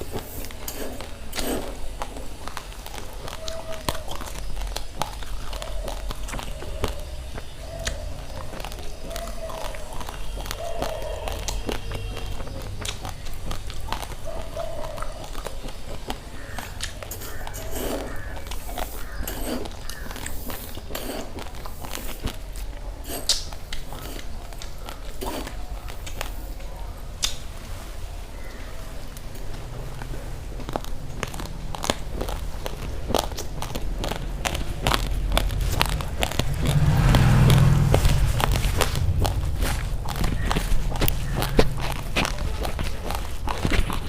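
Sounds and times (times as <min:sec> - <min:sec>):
raw rice crunching while chewed: 0:00.0 - 0:27.4, 0:28.4 - 0:44.0
steady low hum: 0:31.9 - 0:44.0.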